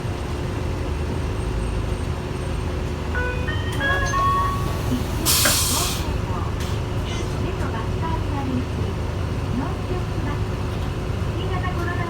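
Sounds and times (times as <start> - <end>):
bus diesel engine idling: 0.0 - 12.0
door warning chime: 3.2 - 5.2
compressed air hiss: 5.0 - 6.1.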